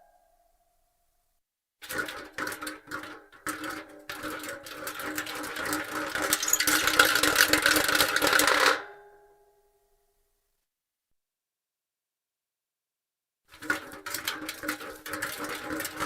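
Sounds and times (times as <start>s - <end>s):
hubcap rolling on concrete: 1.8s - 8.7s, 13.5s - 16.0s.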